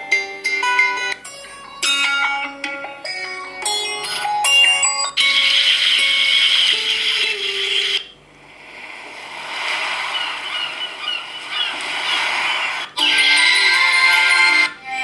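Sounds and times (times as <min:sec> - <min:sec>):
melodic ringtone: 0:00.0 - 0:08.1, 0:13.0 - 0:15.0.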